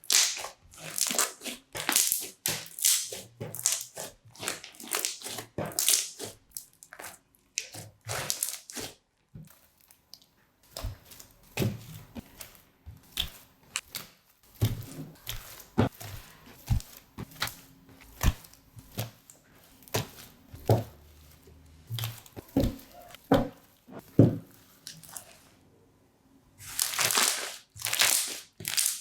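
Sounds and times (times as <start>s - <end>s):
crunchy slime crackling and popping: 0.0s - 9.0s, 9.6s - 21.3s, 26.6s - 29.0s.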